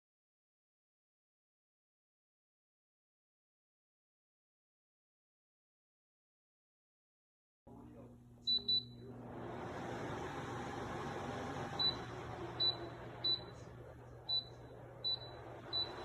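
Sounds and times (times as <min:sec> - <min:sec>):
fan air rushing: 0:07.7 - 0:16.0
short high beeps: 0:14.3 - 0:16.0.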